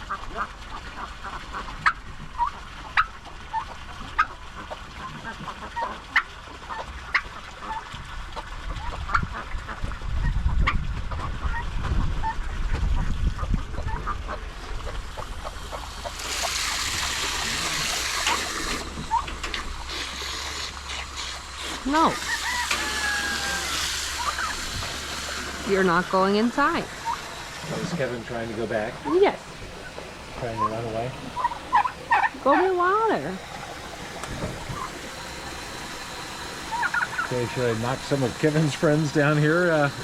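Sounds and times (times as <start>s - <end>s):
poultry calling: 21.9s - 24.6s, 36.7s - 37.4s.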